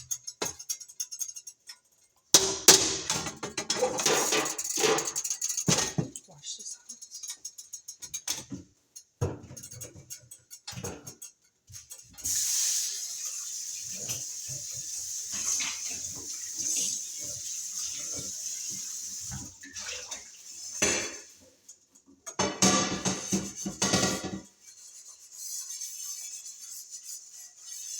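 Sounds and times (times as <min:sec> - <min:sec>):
cookware clinking and knocking: 0:00.0 - 0:06.3, 0:06.9 - 0:11.8, 0:20.8 - 0:21.3, 0:22.2 - 0:24.6
tap water running into sink: 0:12.2 - 0:21.4.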